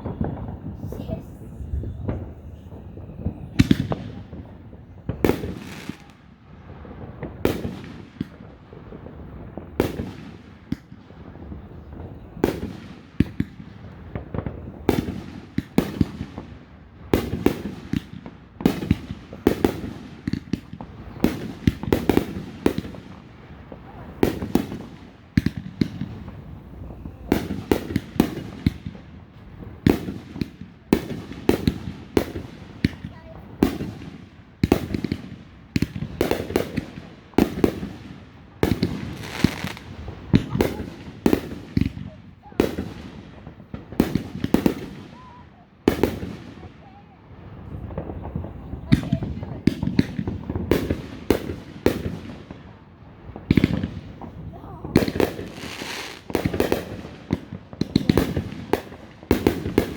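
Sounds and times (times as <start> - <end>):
fireworks exploding: 0.0 - 59.9.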